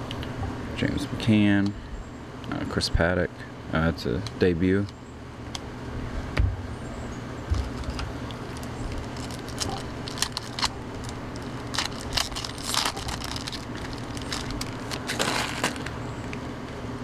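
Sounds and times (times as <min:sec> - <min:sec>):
steady low hum: 0:00.0 - 0:17.0
cards being flipped through: 0:07.5 - 0:16.4.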